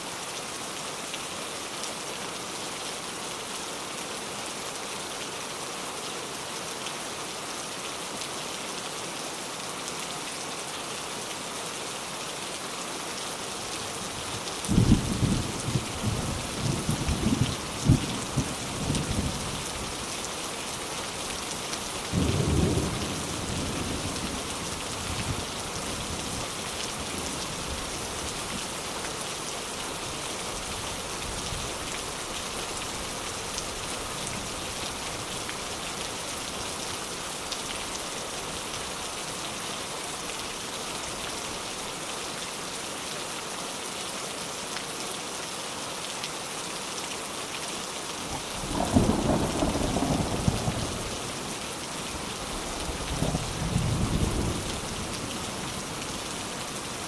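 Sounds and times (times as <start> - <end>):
steady rain: 0.0 - 57.0
thunder cracks and rumbles: 48.3 - 51.4.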